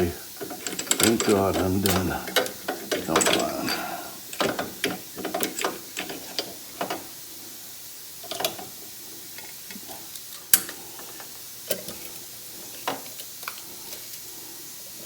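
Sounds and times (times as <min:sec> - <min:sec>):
faint steady hum: 0:00.0 - 0:15.0
metallic clicks and knocks: 0:00.4 - 0:03.6, 0:04.3 - 0:07.0.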